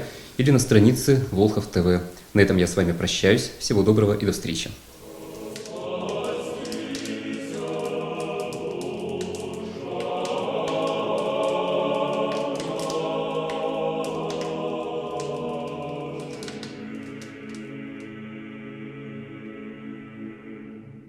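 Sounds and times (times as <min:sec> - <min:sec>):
choir singing slow chords: 0:04.9 - 0:21.0.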